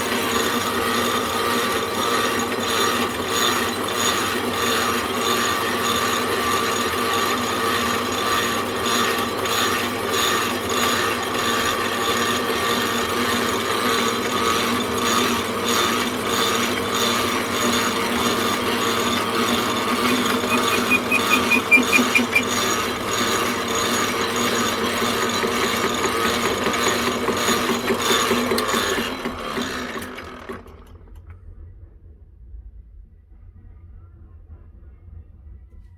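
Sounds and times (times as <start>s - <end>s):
lathe running with gear whine: 0.0s - 31.1s
high-pitched squeal: 19.0s - 23.4s.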